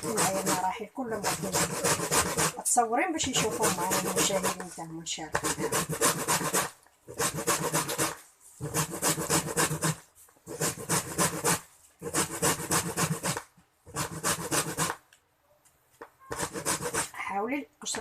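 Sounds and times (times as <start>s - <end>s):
lemon peel rasping on grater: 0.0s - 2.6s, 3.2s - 4.7s.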